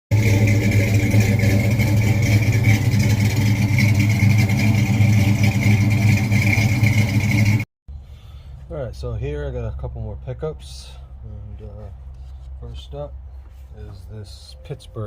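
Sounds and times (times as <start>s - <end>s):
car engine running: 0.1s - 7.7s.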